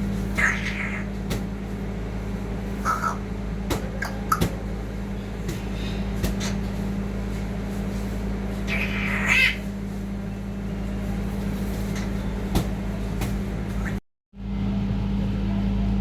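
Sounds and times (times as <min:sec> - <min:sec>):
steady low hum: 0:00.0 - 0:16.0
parrot squeaks: 0:00.4 - 0:01.1, 0:08.7 - 0:09.6.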